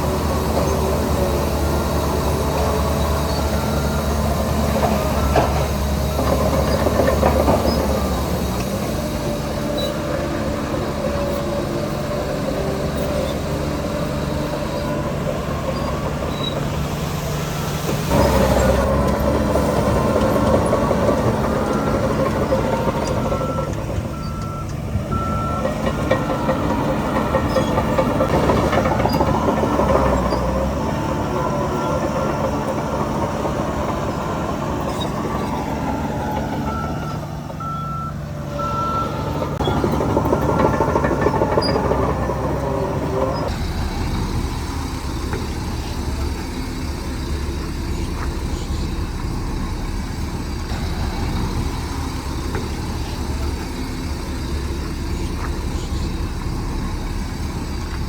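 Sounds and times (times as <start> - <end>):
diesel machinery engines running: 0.0 - 58.0
reversing alarm beeping: 18.3 - 33.2, 33.9 - 43.0.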